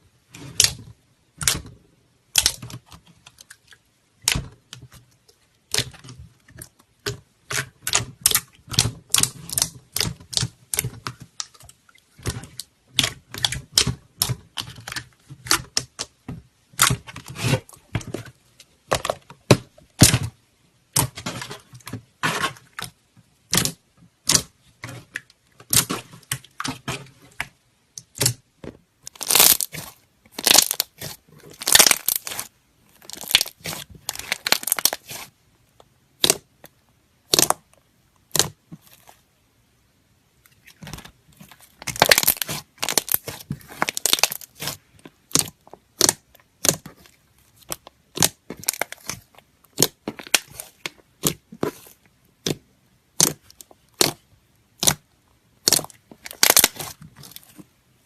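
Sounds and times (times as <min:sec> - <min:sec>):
slime squeezed crackling: 0:29.0 - 0:35.4, 0:36.2 - 0:39.2, 0:40.4 - 0:57.7.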